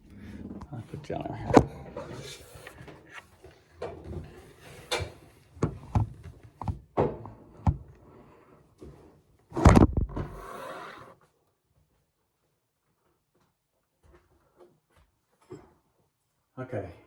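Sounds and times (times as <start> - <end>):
objects knocking and thumping: 9.6 - 10.6.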